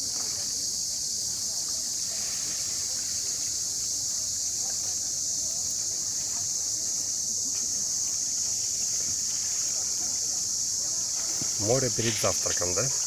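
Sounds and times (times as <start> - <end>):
cicadas shrilling: 0.0 - 13.0.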